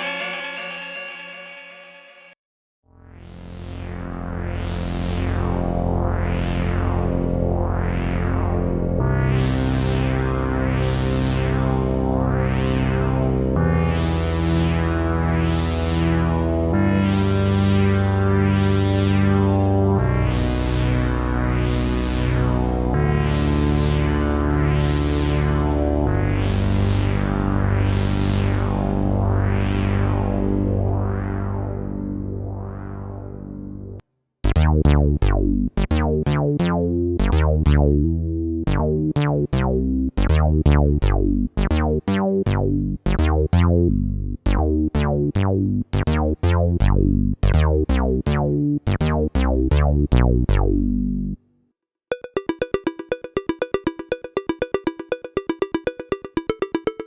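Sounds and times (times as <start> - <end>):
plucked synth bass notes: 34.4 - 51.4, 52.1 - 57.0
bright repeating synth pulses: 52.1 - 57.0
synth chord with filter sweep: 52.1 - 57.0.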